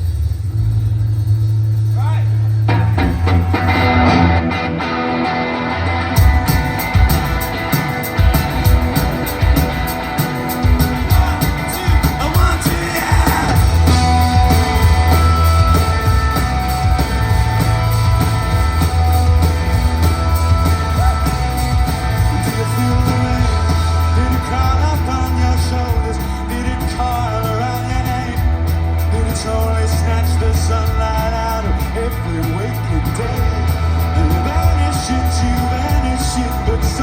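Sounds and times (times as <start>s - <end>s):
heavy low bass: 0.0s - 37.0s
live rock band playing: 1.8s - 37.0s
person singing: 10.8s - 17.5s, 20.0s - 37.0s.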